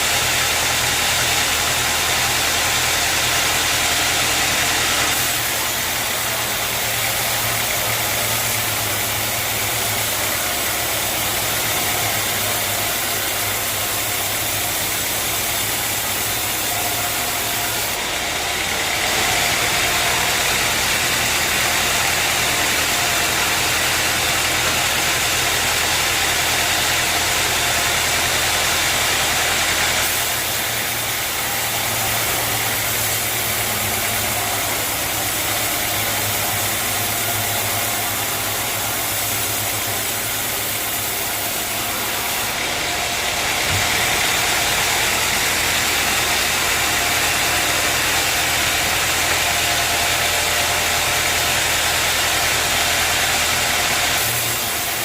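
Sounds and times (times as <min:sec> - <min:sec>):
sawmill machinery running: 0:00.0 - 0:55.0.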